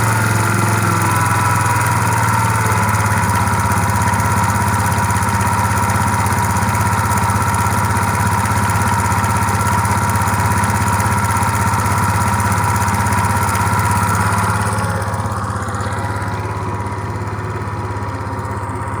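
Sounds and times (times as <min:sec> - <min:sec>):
scooter engine whining: 0:00.0 - 0:19.0.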